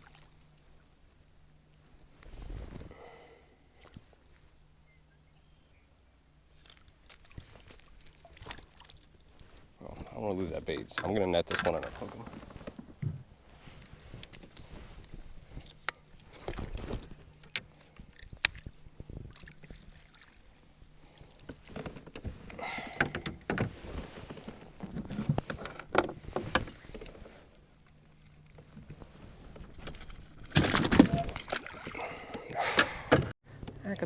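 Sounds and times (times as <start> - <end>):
water sloshing: 6.7 - 9.6, 19.3 - 21.7, 28.0 - 33.2
knocks and clicks in a kayak: 10.6 - 13.3, 15.6 - 19.9, 21.4 - 27.3, 27.9 - 33.8.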